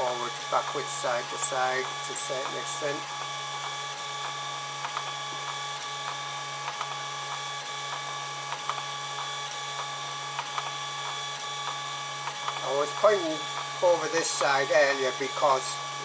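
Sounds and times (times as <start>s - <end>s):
stepper motors humming and whining: 0.0s - 16.0s
small clicks: 3.6s - 12.6s.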